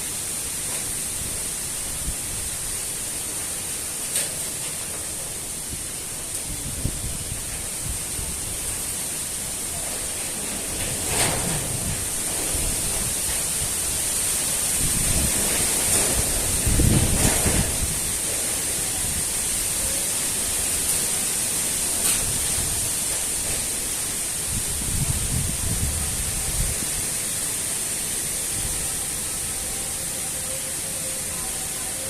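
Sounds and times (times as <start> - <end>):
wind buffeting microphone: 6.3 - 8.9, 10.7 - 18.3, 24.4 - 27.2
strong wind blowing: 6.4 - 8.9, 10.7 - 18.2, 24.3 - 27.4.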